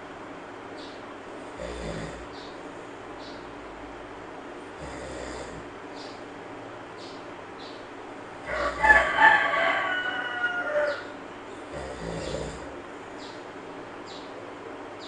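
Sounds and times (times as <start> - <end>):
monkey snoring: 1.4 - 2.4, 4.8 - 5.7, 11.5 - 12.8
rooster crowing: 8.4 - 11.3.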